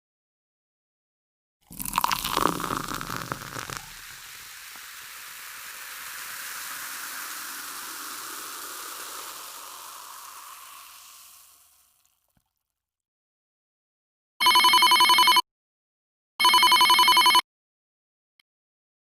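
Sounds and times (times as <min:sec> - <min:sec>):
steady hiss: 0:01.8 - 0:12.1.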